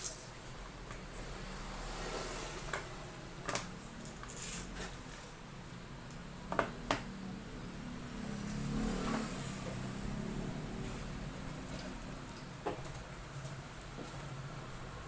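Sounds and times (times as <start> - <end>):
steady background hum: 0.0 - 8.5.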